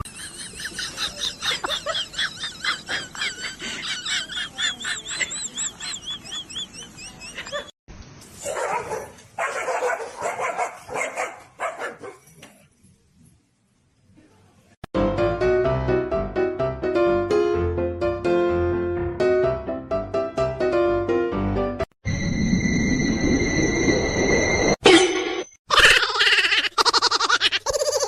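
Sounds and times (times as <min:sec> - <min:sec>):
dog barking: 0:08.4 - 0:12.2.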